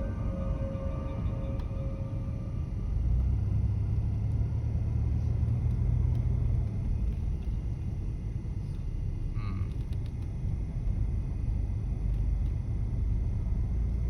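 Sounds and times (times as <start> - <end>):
car tyres and engine rumble: 0.0 - 14.0.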